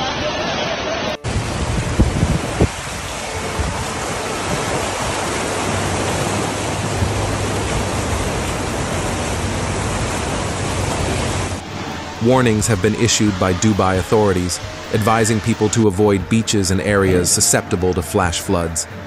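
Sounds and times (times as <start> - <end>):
heavy rain: 0.0 - 19.0
running floodwater: 0.0 - 19.0.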